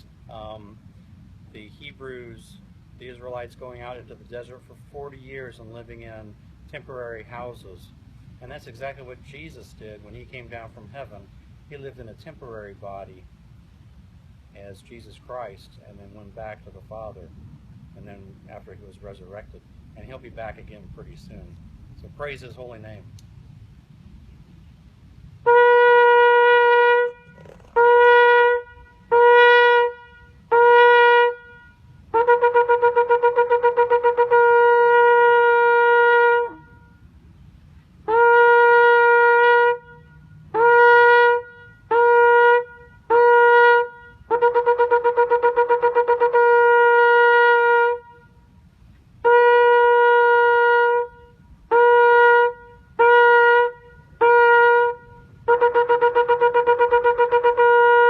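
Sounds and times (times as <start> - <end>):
shofar horn blasts: 25.4 - 37.2, 38.0 - 58.0.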